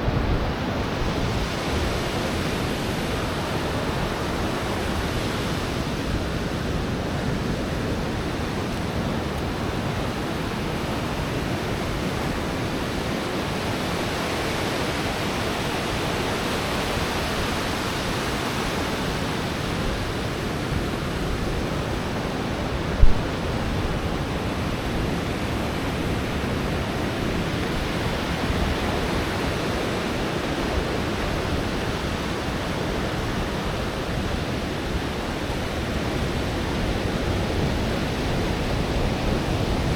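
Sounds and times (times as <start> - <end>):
surf washing onto beach: 0.0 - 39.9
brief low thump: 23.0 - 23.3.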